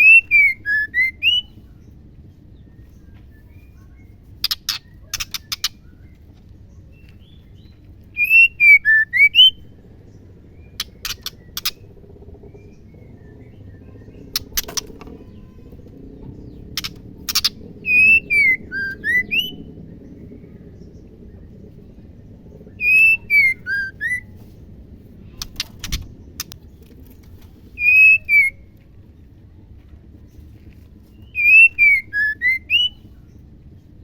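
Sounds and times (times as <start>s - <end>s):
bird whistled phrases: 0.0s - 1.6s, 8.1s - 9.6s, 16.8s - 19.7s, 22.7s - 24.4s, 27.8s - 28.7s, 31.2s - 33.1s.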